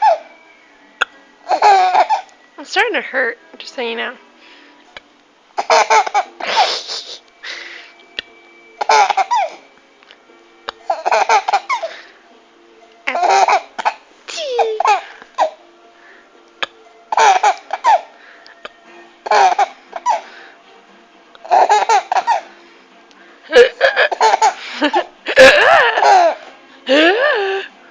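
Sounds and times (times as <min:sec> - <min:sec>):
baby laughing: 0:00.0 - 0:00.3, 0:01.5 - 0:02.3, 0:05.6 - 0:07.3, 0:08.8 - 0:09.6, 0:10.8 - 0:12.0, 0:13.1 - 0:15.6, 0:17.1 - 0:18.1, 0:19.2 - 0:20.3, 0:21.4 - 0:22.5, 0:23.5 - 0:27.1.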